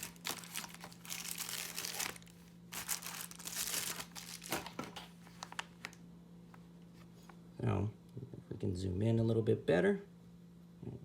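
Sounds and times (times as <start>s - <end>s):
packaging crinkling: 0.0s - 6.0s.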